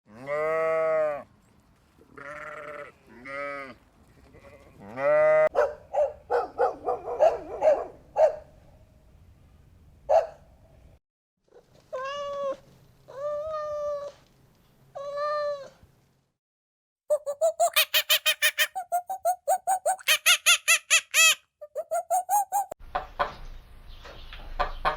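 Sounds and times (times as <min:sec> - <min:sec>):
farm animals bleating: 0:00.1 - 0:01.2, 0:02.1 - 0:05.5.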